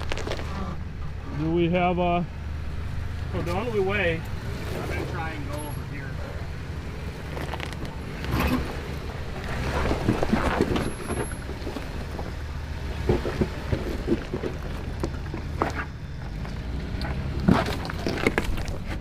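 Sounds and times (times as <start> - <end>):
tyres crunching on stones: 0.0 - 1.1, 6.8 - 19.0
engine running at low revs: 0.0 - 19.0.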